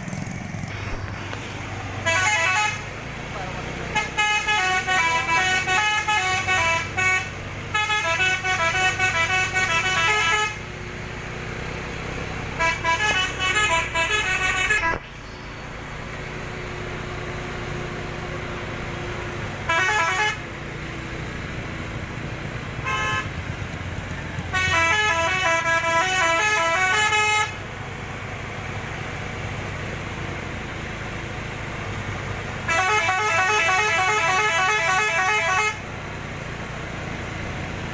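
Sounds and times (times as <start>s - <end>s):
diesel engine running: 0.0s - 37.9s
multi-tone musical horn: 2.0s - 2.9s, 3.9s - 10.7s, 12.5s - 15.1s, 19.6s - 20.5s, 22.8s - 23.5s, 24.4s - 27.6s, 32.7s - 35.8s.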